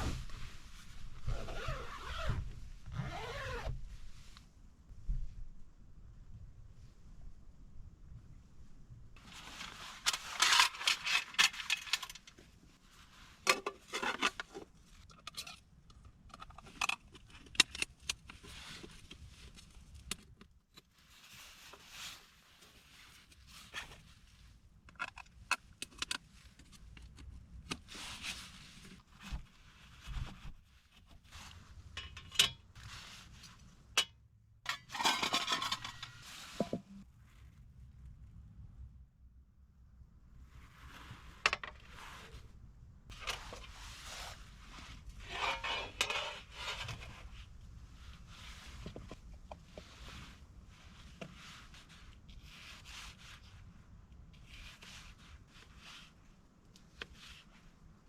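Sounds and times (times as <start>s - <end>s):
small metal items clinking: 34.7s - 36.4s.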